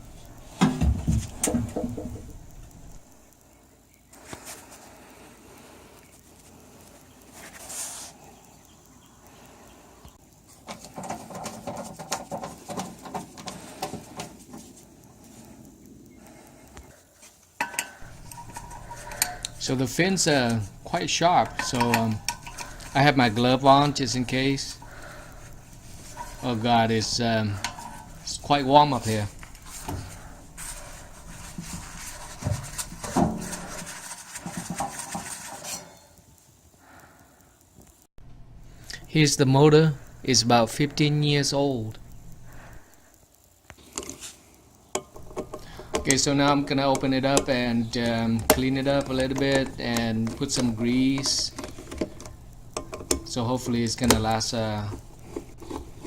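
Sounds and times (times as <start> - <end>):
heavy breathing: 15.1 - 19.8, 20.4 - 28.3, 29.1 - 32.2, 36.8 - 37.6, 42.4 - 43.2
sheet metal clattering and scraping: 17.6 - 36.0.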